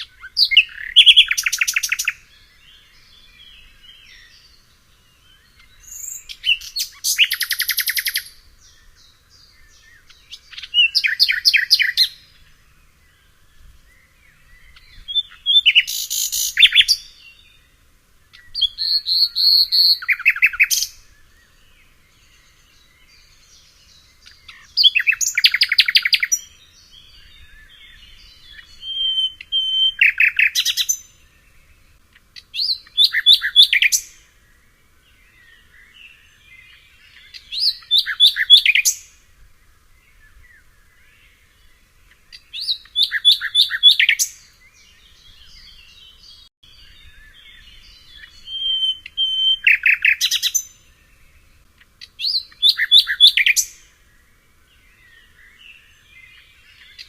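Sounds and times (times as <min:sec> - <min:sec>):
birds chirping quietly: 0:00.0 - 0:57.0
songbird singing loud phrase: 0:00.0 - 0:57.0.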